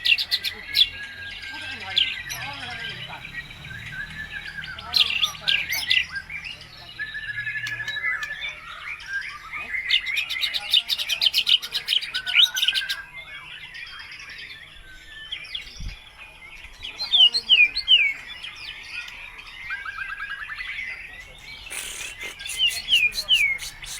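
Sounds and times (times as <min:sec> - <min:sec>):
bird trill: 0:00.0 - 0:23.9
bird singing whistled phrases: 0:18.9 - 0:23.9.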